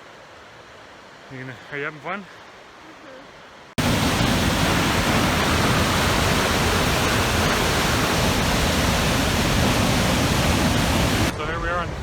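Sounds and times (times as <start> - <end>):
river rushing through gorge: 3.8 - 11.3.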